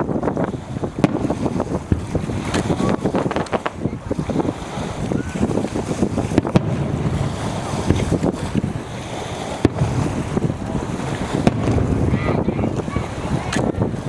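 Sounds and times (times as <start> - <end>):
strong wind buffeting microphone: 0.0 - 14.0
fireworks shells bursting: 1.0 - 4.1, 9.6 - 12.9.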